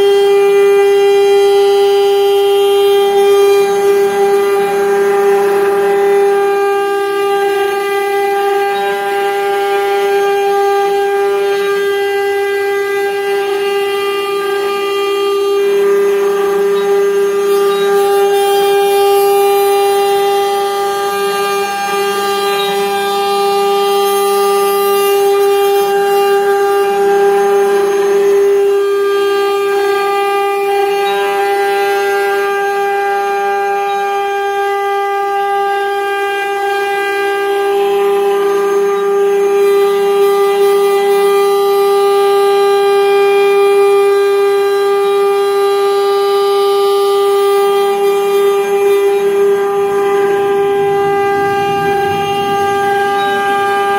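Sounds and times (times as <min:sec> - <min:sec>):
low machine hum: 0:00.0 - 0:32.6, 0:47.4 - 0:53.9
router spindle whine: 0:00.0 - 0:53.9.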